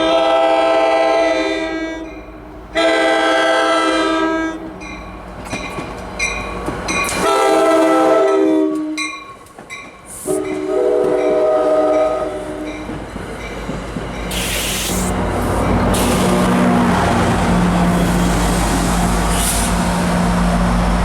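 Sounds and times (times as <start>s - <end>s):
locomotive air horn blasts: 0.0s - 2.2s, 2.8s - 4.7s, 7.1s - 9.1s, 10.2s - 12.8s
burst of hiss: 14.3s - 15.2s.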